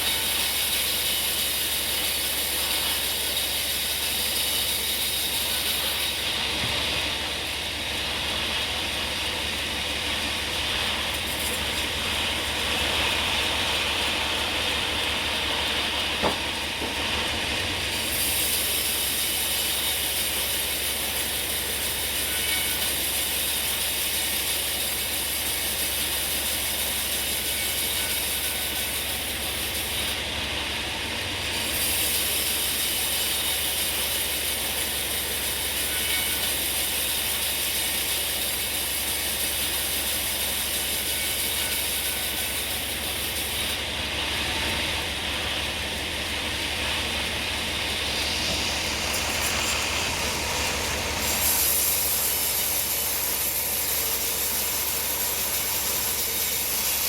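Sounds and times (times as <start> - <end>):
sawmill saw cutting log: 0.0 - 57.0.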